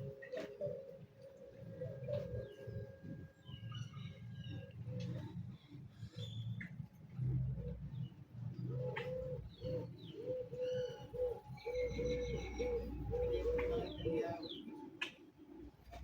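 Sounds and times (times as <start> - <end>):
bird calling low notes: 7.6 - 16.0.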